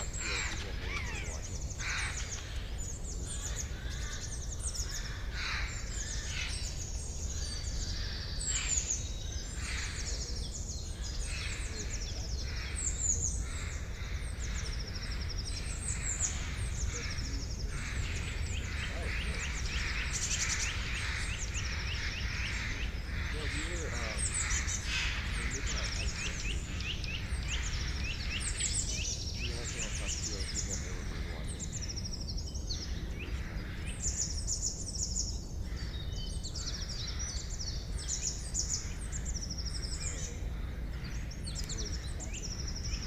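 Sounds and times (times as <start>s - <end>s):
lower bird call: 0.0s - 6.8s
songbirds chirping and trilling: 0.0s - 43.0s.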